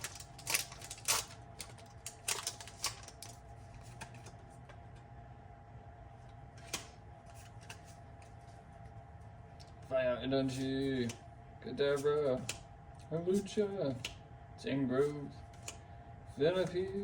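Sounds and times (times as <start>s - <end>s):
foil pack crinkling: 0.0s - 4.3s
faint steady hum: 0.0s - 17.0s.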